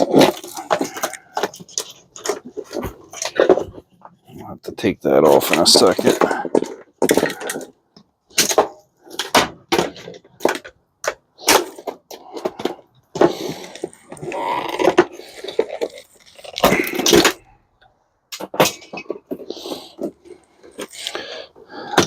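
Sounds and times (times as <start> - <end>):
plastic and metal parts cracking: 0.0 - 4.4, 5.2 - 22.0
scraping and rattling: 0.0 - 4.4, 5.2 - 17.6.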